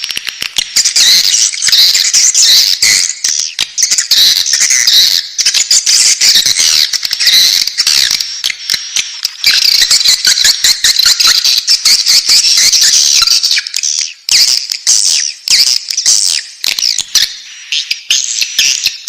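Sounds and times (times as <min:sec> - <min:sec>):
bird chicks chirping: 0:00.0 - 0:19.0.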